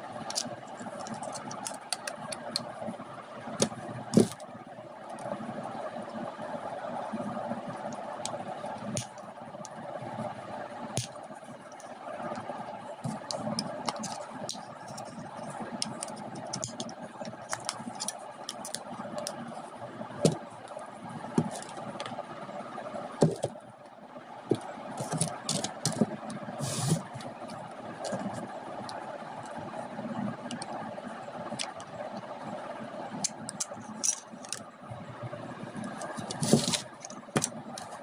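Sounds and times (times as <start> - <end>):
steady hum: 0.0 - 38.0
knocks clicks and scraping on battery: 24.5 - 26.1.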